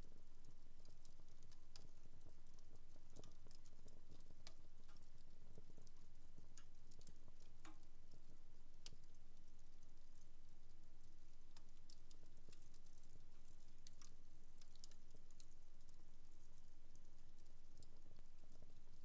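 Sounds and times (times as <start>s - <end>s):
wood fire crackling: 11.5s - 19.0s.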